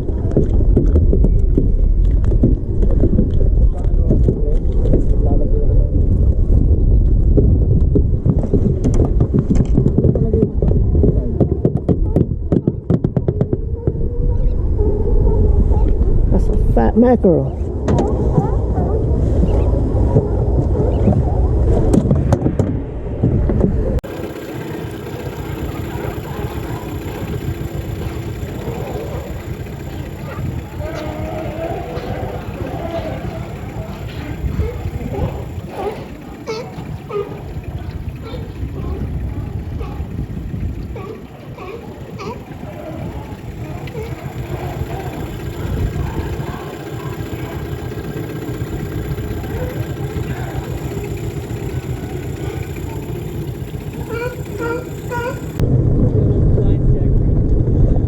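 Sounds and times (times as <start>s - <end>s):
outboard motor running: 0.0s - 55.7s
low rumbling noise: 13.6s - 58.0s.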